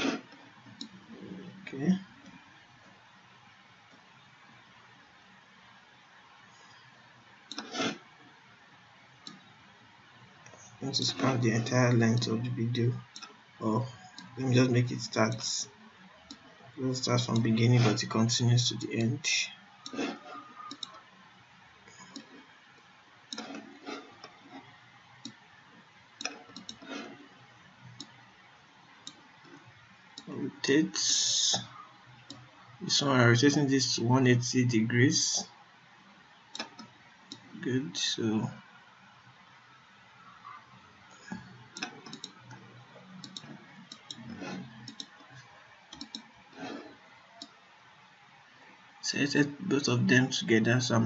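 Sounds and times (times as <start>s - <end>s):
computer mouse clicking: 0.0s - 1.0s, 7.5s - 8.0s, 9.2s - 9.4s, 19.8s - 21.0s, 22.0s - 22.4s, 23.3s - 25.4s, 26.2s - 27.2s, 28.0s - 28.2s, 36.5s - 37.5s, 41.3s - 45.3s, 45.9s - 47.6s.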